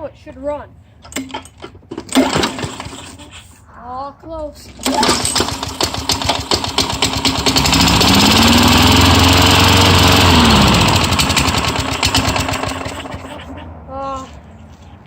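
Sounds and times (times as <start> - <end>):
lawn mower engine sputtering: 1.1 - 3.2, 4.8 - 13.6.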